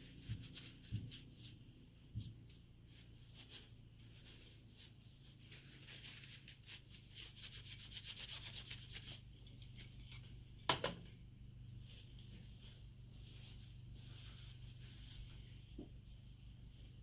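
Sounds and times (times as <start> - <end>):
quick rubbing strokes: 2.2 - 9.2.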